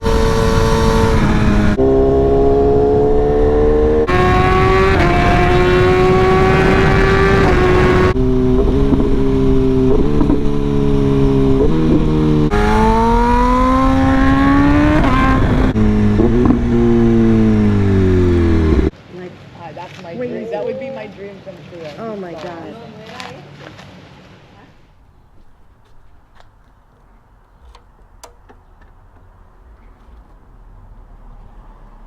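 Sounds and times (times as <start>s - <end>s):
motorcycle engine revving: 0.0s - 18.9s.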